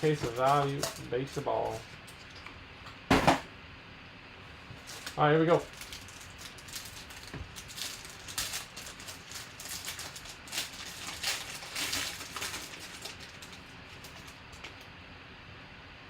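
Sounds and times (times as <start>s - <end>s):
card pack crinkling and rustling: 0.0s - 2.4s, 4.8s - 14.9s.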